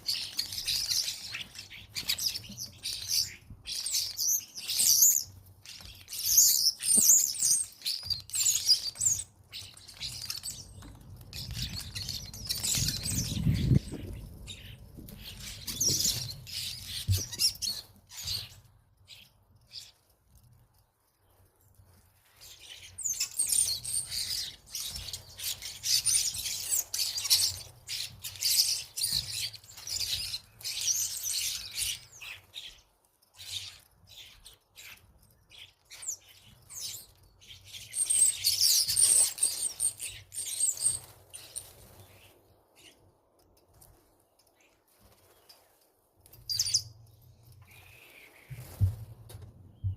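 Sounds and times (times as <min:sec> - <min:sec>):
starlings chattering: 0:00.0 - 0:19.9, 0:33.4 - 0:42.9.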